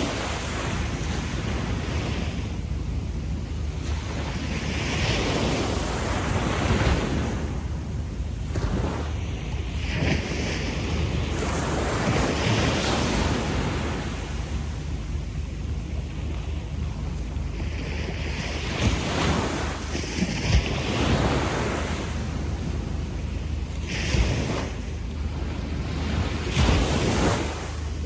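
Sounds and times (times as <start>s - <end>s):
small waves on sandy beach: 0.0s - 28.0s
wind on microphone: 0.0s - 28.0s.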